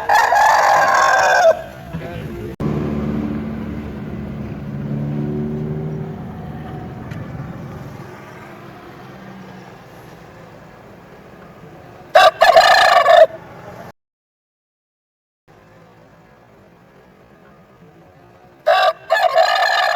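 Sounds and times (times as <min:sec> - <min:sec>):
rooster crowing: 0:00.0 - 0:01.8, 0:12.1 - 0:13.4, 0:18.7 - 0:19.9
low rumble: 0:02.0 - 0:08.1.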